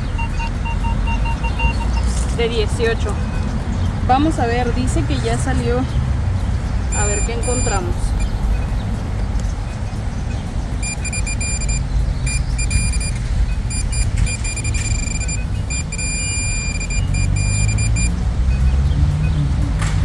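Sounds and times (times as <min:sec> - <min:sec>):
metal detector beeping: 0:06.9 - 0:09.8, 0:10.8 - 0:18.6.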